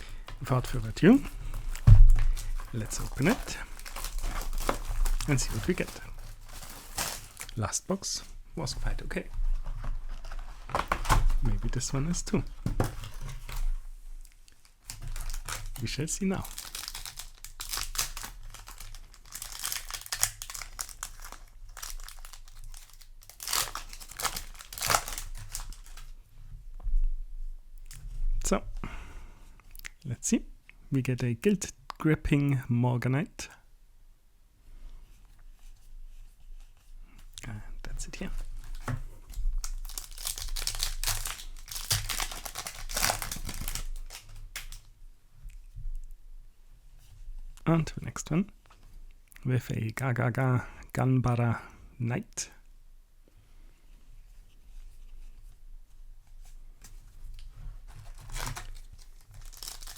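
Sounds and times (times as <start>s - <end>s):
foil pack crinkling: 0.0s - 13.8s, 14.6s - 26.1s, 38.3s - 44.9s, 57.2s - 59.9s.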